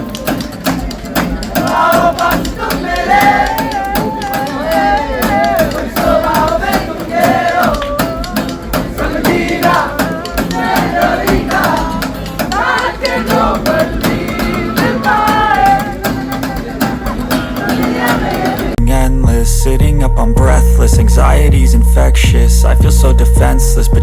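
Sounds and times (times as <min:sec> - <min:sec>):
crowd noise: 0:00.0 - 0:19.2
wavering vocal line: 0:00.0 - 0:24.0.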